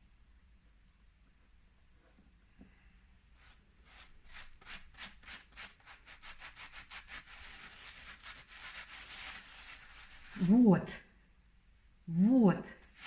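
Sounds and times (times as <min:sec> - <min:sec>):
rag scrubbing brick: 0:03.9 - 0:10.5.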